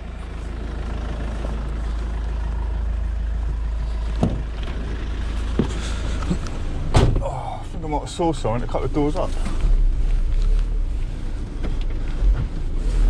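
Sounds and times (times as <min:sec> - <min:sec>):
van engine and road rumble: 0:00.0 - 0:13.0.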